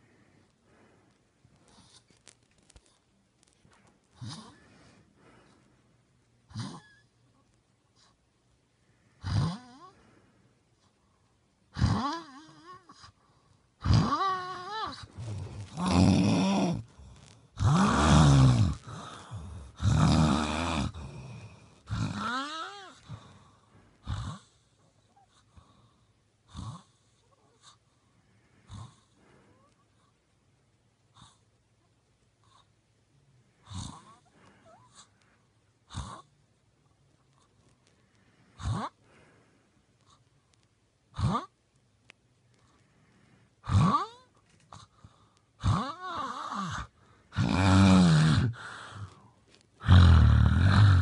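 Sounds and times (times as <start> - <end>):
man snoring: 13.8 - 22.9, 45.6 - 49.1, 49.8 - 51.0.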